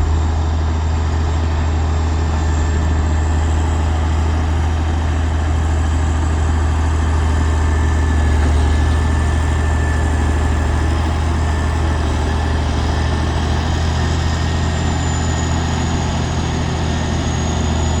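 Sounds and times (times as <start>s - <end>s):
heavy machinery engine running: 0.0s - 18.0s.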